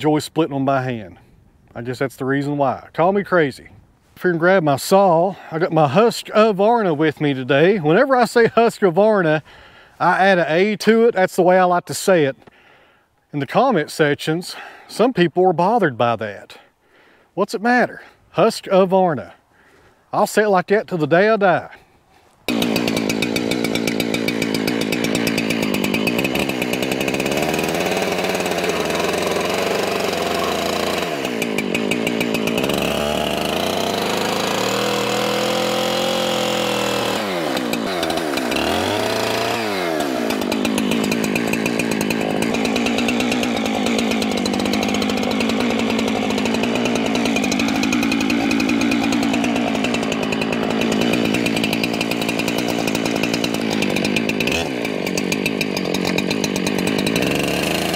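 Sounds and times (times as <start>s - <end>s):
chainsaw cutting wood: 4.9s - 11.2s, 21.7s - 57.9s.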